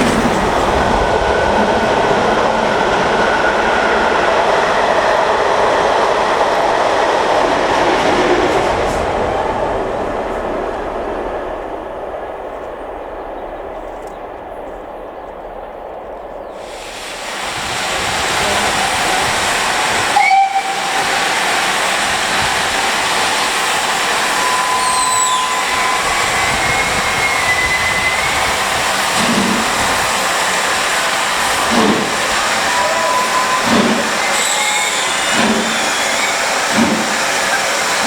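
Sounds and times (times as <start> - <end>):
steam locomotive hissing: 0.0 - 10.0, 16.6 - 38.0
whistle-like tone: 24.4 - 28.5, 32.7 - 36.5.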